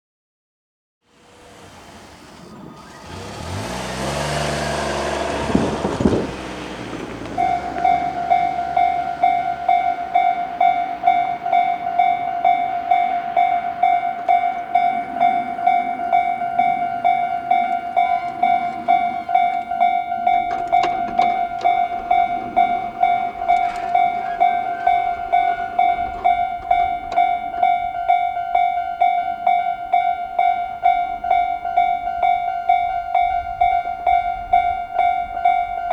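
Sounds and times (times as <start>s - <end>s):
vehicle passing: 1.1s - 35.9s
level-crossing alarm tone: 6.7s - 35.9s.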